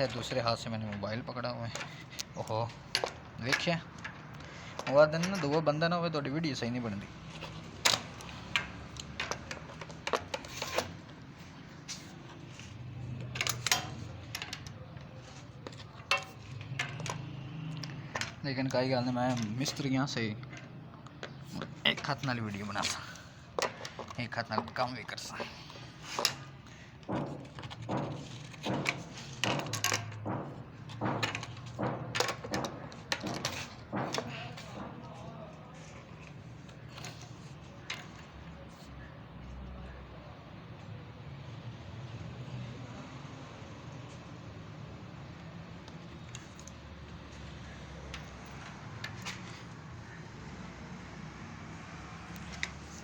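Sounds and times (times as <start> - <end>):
tools and pipe fittings clinking: 0.0 - 5.9, 7.2 - 11.2, 11.8 - 35.0.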